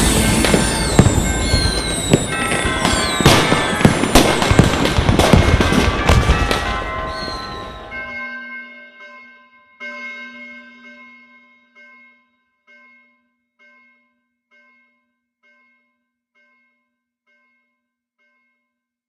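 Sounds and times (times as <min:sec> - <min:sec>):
fireworks bangs and crackles: 0:00.0 - 0:08.1
fireworks falling whistles: 0:00.0 - 0:08.1
ringing bell-like chime: 0:00.0 - 0:19.0.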